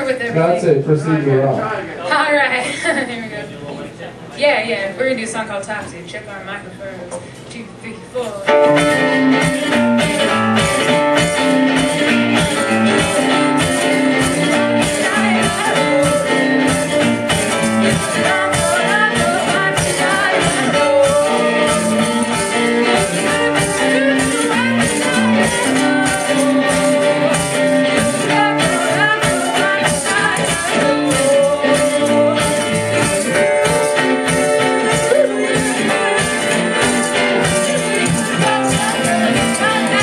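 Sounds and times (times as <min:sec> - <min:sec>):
drums steady beat: 0:08.5 - 0:40.0
electric guitar: 0:08.5 - 0:40.0
person singing: 0:17.9 - 0:40.0.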